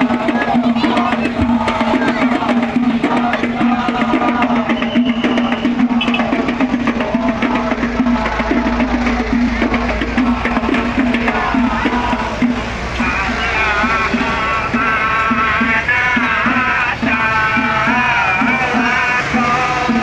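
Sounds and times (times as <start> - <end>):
rapid dense drumming: 0.0 - 20.0.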